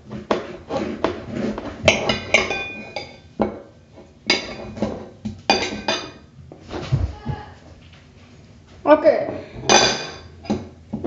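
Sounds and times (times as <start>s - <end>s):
knife cutting on hard surface: 0.0s - 3.0s.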